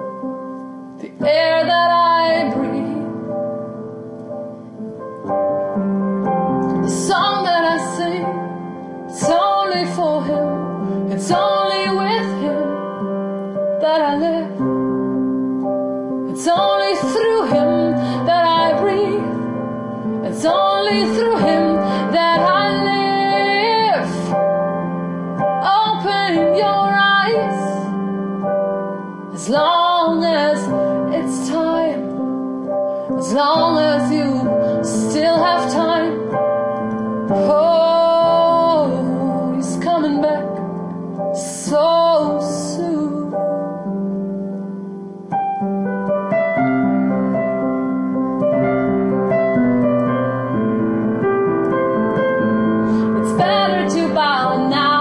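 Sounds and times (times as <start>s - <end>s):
sustained piano chords: 0.0s - 55.0s
woman singing: 1.0s - 3.4s, 6.8s - 14.8s, 16.3s - 24.5s, 25.4s - 28.0s, 29.3s - 32.3s, 33.1s - 36.4s, 37.3s - 44.0s, 53.0s - 55.0s.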